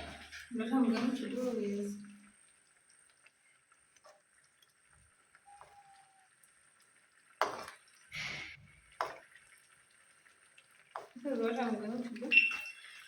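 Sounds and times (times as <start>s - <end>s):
cookware scrape: 0.0s - 1.6s, 7.4s - 9.3s.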